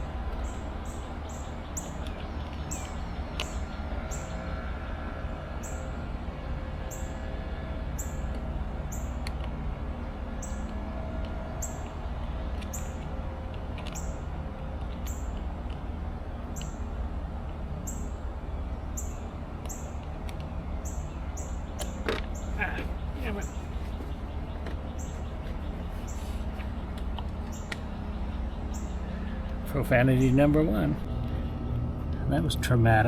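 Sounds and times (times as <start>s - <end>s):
bird chirping: 0.0s - 4.6s, 10.4s - 10.7s, 12.6s - 13.1s, 16.4s - 16.9s, 17.8s - 31.1s
steady low rumble: 0.0s - 33.0s.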